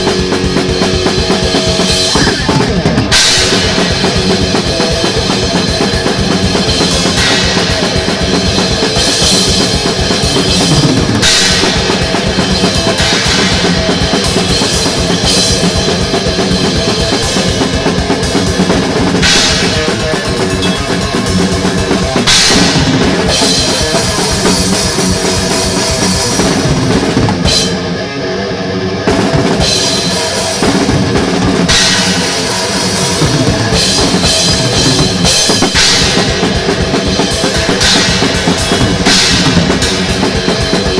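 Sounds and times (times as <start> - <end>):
drum kit pounding: 0.0 - 28.3, 29.0 - 40.9
thrash metal band: 0.0 - 40.9.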